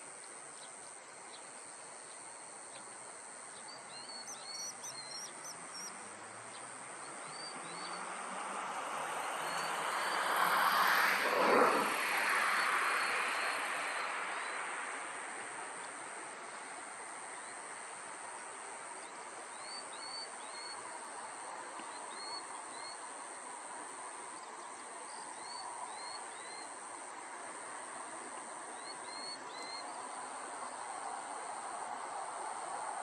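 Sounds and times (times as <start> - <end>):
background hiss: 0.0 - 33.0
vehicle passing: 7.3 - 15.6.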